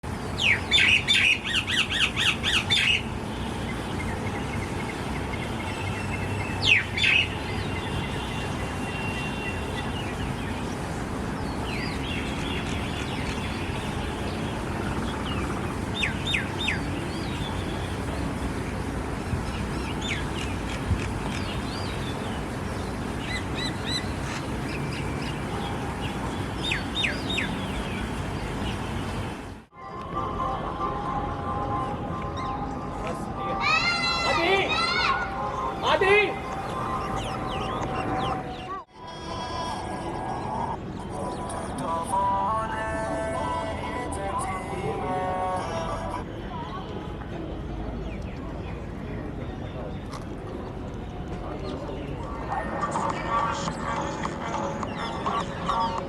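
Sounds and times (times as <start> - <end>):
steady background noise: 0.0 - 56.0
parrots chirping and squawking: 0.4 - 3.1.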